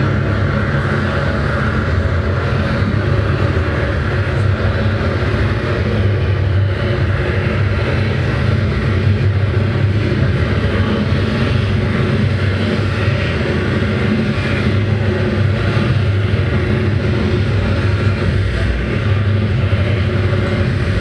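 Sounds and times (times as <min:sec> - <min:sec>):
dense noise music: 0:00.0 - 0:21.0
steady low drone: 0:00.0 - 0:21.0.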